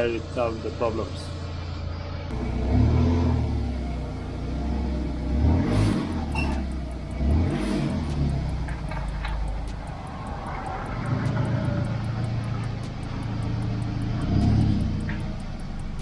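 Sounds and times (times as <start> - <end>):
car engine revving lightly: 0.0 - 16.0
faint fast ticking: 3.8 - 16.0.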